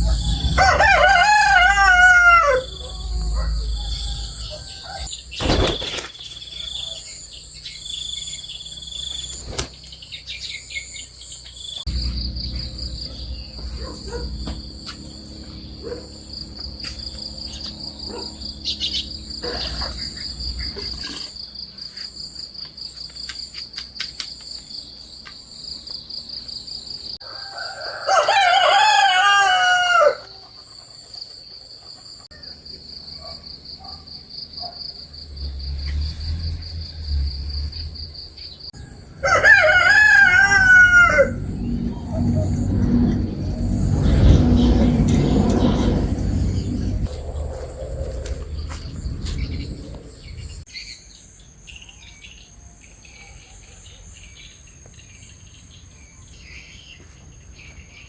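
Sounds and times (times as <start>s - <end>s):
rooster crowing: 0.0s - 5.1s, 27.2s - 30.5s, 38.8s - 50.5s
high buzz of insects: 0.0s - 50.8s.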